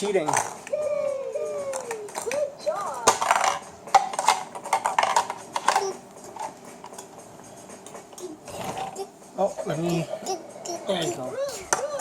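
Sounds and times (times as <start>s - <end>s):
plastic toy pieces clattering: 1.7s - 7.1s.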